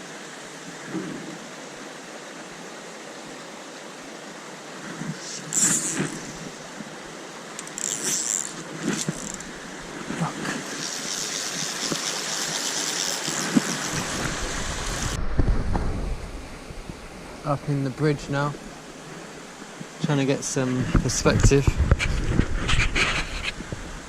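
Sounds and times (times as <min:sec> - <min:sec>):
running water: 0:00.0 - 0:15.2, 0:16.1 - 0:24.0
wind buffeting microphone: 0:13.6 - 0:17.4, 0:20.7 - 0:24.0.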